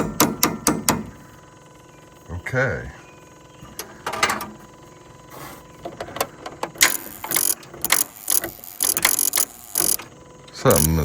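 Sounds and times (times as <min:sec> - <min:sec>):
starter relays clicking and chattering: 0:05.8 - 0:11.0.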